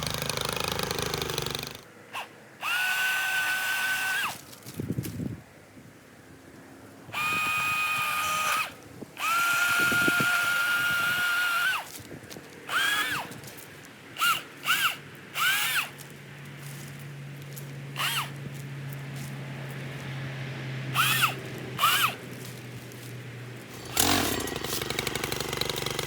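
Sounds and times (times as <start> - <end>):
power saw motor whining: 0.0 - 1.8, 21.0 - 22.2, 23.7 - 26.0.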